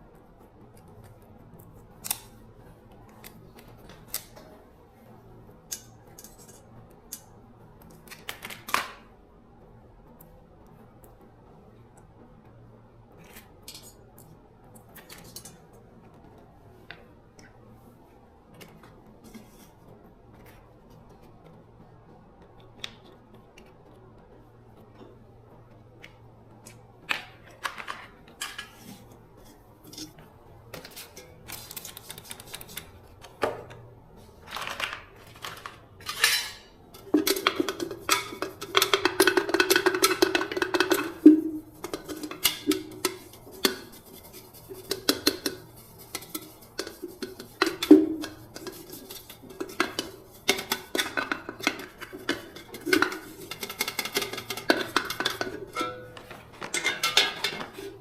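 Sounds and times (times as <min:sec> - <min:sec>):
metal rattling scrape: 0:34.6 - 0:58.0
metal tools clinking and clattering: 0:36.0 - 0:36.7.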